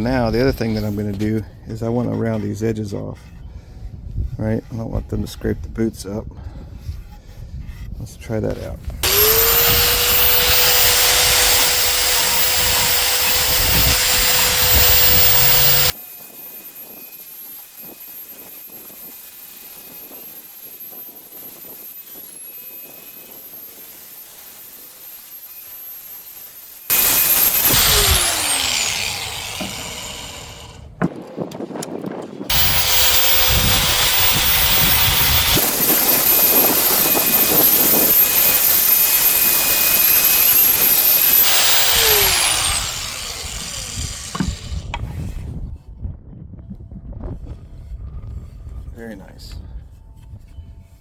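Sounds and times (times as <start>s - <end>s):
belt sander whining: 9.0s - 31.0s, 32.5s - 45.1s
sander belt grinding wood: 9.0s - 31.0s, 32.5s - 45.2s.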